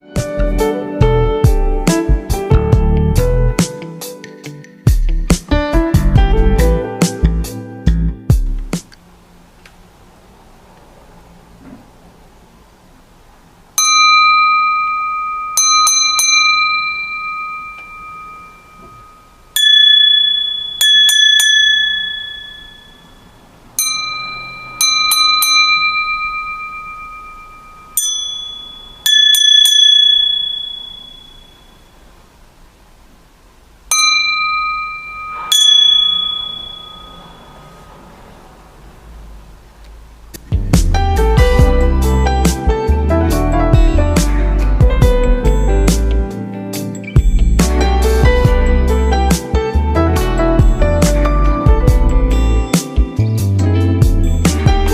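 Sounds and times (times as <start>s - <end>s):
crystal glasses ringing when tapped: 13.8s - 32.0s, 33.9s - 38.0s.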